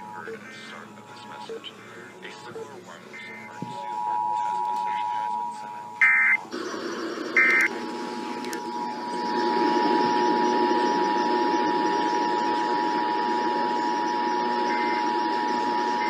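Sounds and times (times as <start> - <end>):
warbling digital data tones: 3.1 - 16.0
two-tone attention signal: 3.2 - 6.4, 8.8 - 16.0.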